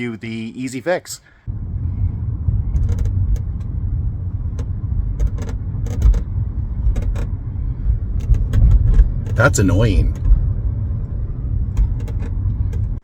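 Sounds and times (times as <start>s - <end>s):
car cabin road rumble: 1.4s - 13.0s
rear hatch creaks and ticks: 2.6s - 13.0s.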